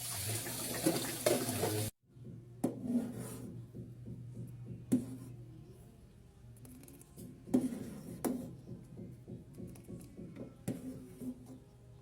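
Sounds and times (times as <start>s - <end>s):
running tap water: 0.0s - 1.9s.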